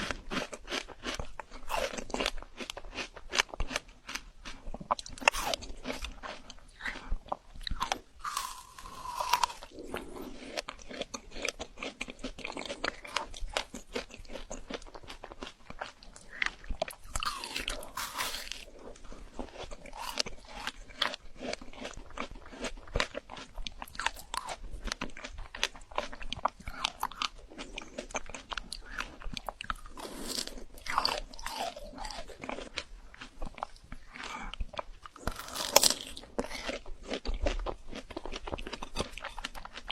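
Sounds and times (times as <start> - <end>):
frozen fruit crunching: 0.0 - 39.9.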